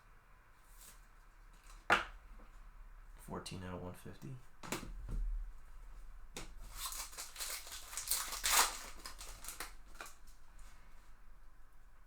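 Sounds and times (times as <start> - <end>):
cards and wrapping rustling: 6.6 - 10.8.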